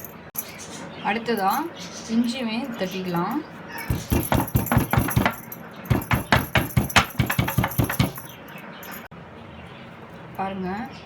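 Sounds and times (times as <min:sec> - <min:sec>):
pestle pounding in a mortar: 0:03.9 - 0:08.3.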